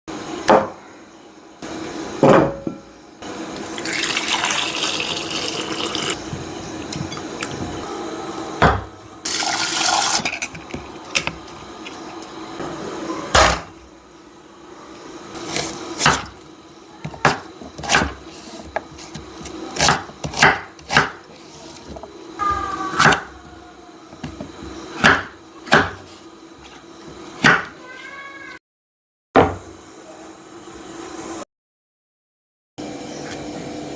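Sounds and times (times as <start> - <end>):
tap running: 3.5 - 7.8, 8.6 - 12.8, 15.4 - 27.8
utensils and cookware clinking: 9.3 - 12.5.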